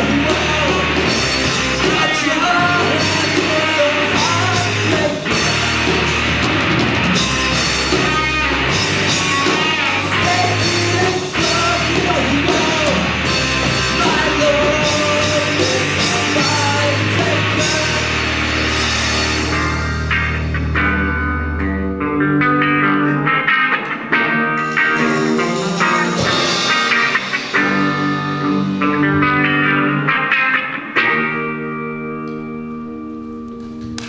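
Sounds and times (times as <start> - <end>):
person singing: 0.0 - 5.8, 7.9 - 18.6
rock band playing live: 0.0 - 34.0.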